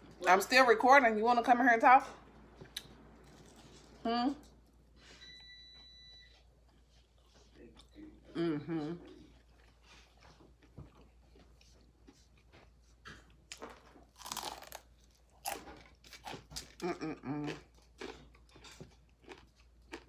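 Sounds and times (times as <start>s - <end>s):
crunching of crisp fried food: 9.2s - 20.0s.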